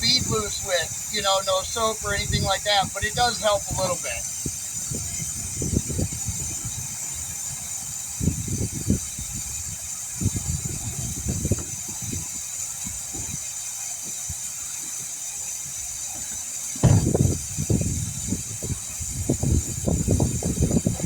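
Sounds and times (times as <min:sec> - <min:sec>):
air hissing from tire valve: 0:00.0 - 0:21.0
bumps and scuffs handling wheel: 0:16.2 - 0:17.6.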